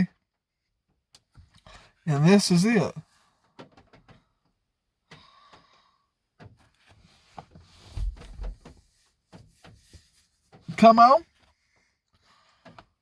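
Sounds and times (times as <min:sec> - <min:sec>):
dull low thump: 0:07.9 - 0:08.7.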